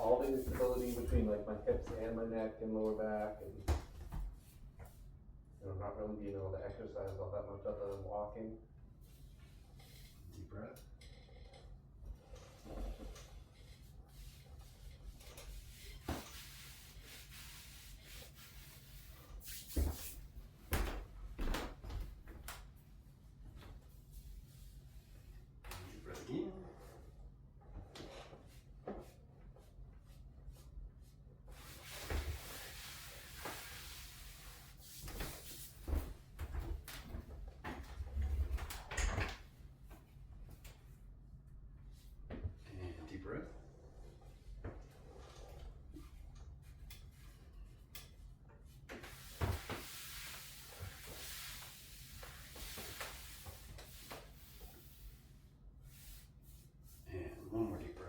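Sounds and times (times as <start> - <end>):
clothing rustling on treatment table: 0.0 - 2.3, 49.0 - 55.3.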